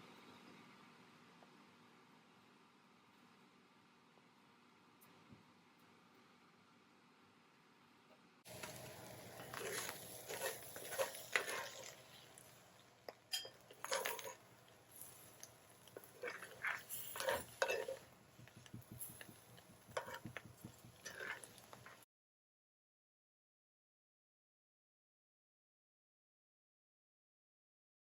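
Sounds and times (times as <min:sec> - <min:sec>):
utensils clinking and scraping pan: 0:08.5 - 0:12.6, 0:13.3 - 0:22.0.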